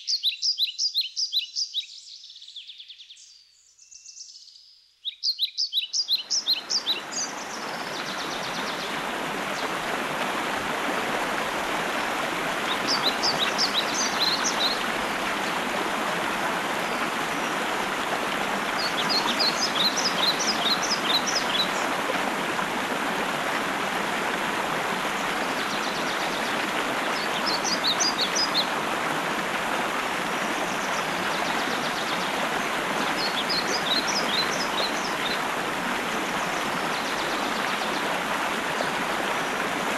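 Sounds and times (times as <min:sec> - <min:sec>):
songbird singing: 0:00.0 - 0:10.3, 0:12.0 - 0:22.1, 0:25.1 - 0:28.8, 0:30.3 - 0:35.4
stream rushing: 0:06.2 - 0:39.9.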